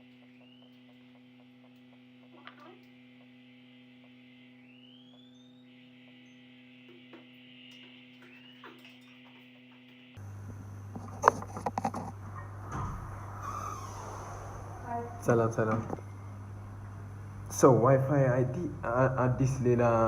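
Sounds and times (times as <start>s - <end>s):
faint clicks and taps: 0.0s - 12.2s
low electrical mains hum: 0.0s - 20.0s.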